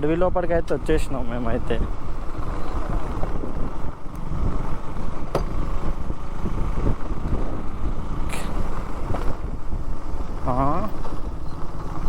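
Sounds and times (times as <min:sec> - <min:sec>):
motorcycle engine rumble: 0:00.0 - 0:12.0
wind on camera: 0:00.4 - 0:12.0
sharp knocks from bumpy ground: 0:05.3 - 0:05.6.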